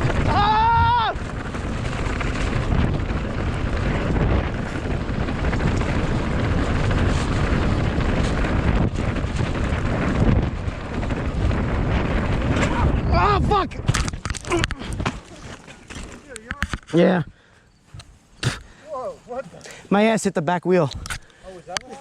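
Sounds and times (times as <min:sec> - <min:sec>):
bike rattling over rocks: 0:00.0 - 0:17.0
wind on microphone: 0:00.0 - 0:18.8.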